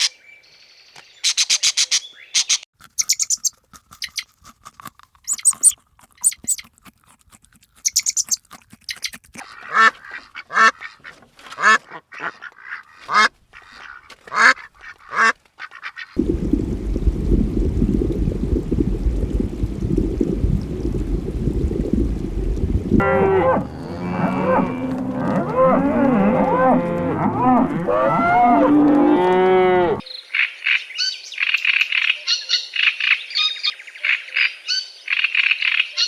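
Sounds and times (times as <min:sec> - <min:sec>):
high bird chirping: 0:00.0 - 0:04.2, 0:05.3 - 0:06.6, 0:07.9 - 0:09.1
farm animal calls: 0:01.2 - 0:04.2
low rumbling: 0:16.2 - 0:30.0
cattle mooing: 0:23.0 - 0:30.0.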